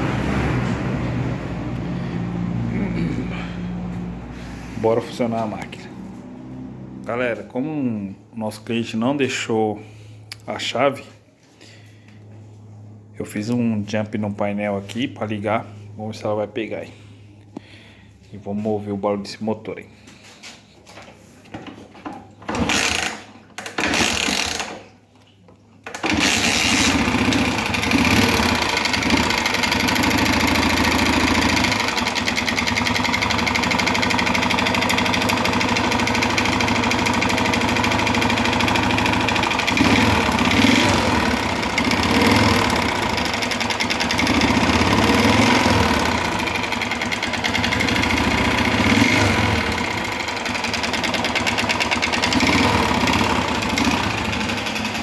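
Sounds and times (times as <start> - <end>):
motorcycle engine running and revving: 0.0 - 7.1, 22.5 - 24.7, 26.0 - 55.0
engine cranking: 22.3 - 24.9, 25.9 - 55.0.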